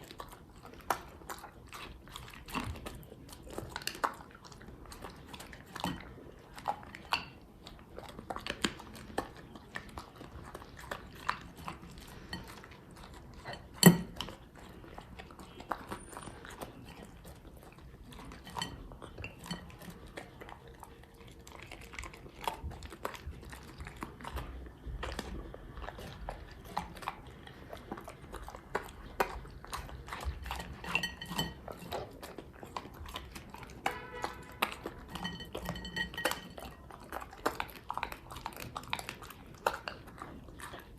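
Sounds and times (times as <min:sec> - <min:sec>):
dog chewing and crunching: 0:00.0 - 0:40.9
clicks and knocks against bowl: 0:13.5 - 0:14.3, 0:30.5 - 0:31.9, 0:33.9 - 0:36.7.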